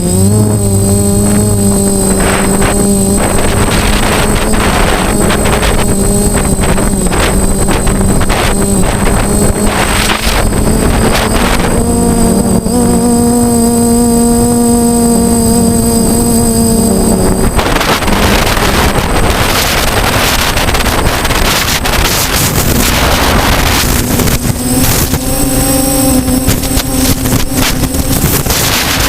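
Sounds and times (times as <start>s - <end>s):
drone propellers buzzing: 0.0s - 29.0s
wind rush: 0.0s - 29.0s.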